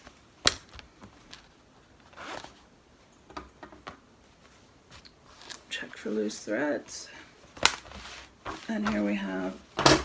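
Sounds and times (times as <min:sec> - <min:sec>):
fabric rustle: 0:00.0 - 0:03.1, 0:04.2 - 0:09.8.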